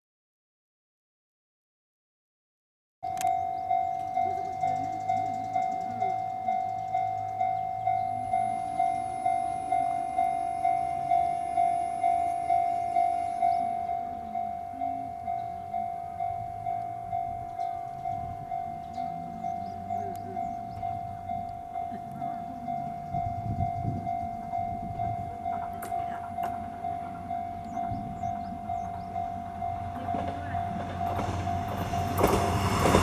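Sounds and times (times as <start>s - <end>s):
diesel train engine rumble: 3.0s - 33.0s
level-crossing alarm dinging: 3.0s - 33.0s
train wheel clicks: 24.0s - 33.0s.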